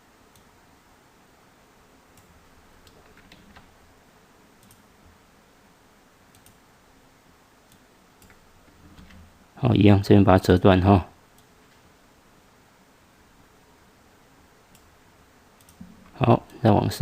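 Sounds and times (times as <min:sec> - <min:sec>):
low room hiss: 0:00.0 - 0:17.0
computer mouse clicks: 0:00.3 - 0:00.5, 0:02.1 - 0:03.7, 0:04.6 - 0:04.9, 0:06.3 - 0:06.6, 0:07.7 - 0:08.4, 0:14.7 - 0:14.9, 0:15.6 - 0:15.9.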